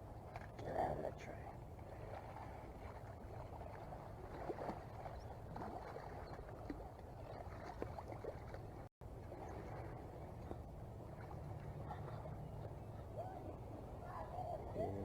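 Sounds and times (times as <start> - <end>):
river water lapping and gurgling: 0.0 - 15.0
small splashy ticks: 0.2 - 1.0, 1.8 - 8.9
low steady rumble: 8.6 - 15.0.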